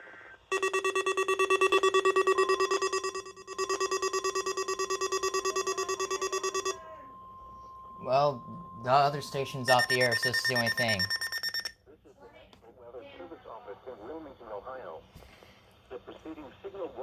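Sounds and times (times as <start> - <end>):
radio alarm buzzing in rapid pulses: 0.3 - 11.7
steady warning alarm tone: 0.5 - 11.7.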